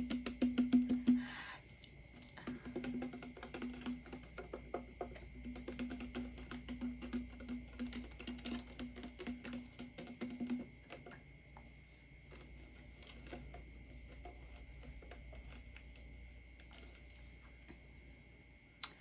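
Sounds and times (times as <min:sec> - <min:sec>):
music with wood-block beat: 0:00.0 - 0:01.3, 0:02.5 - 0:11.2.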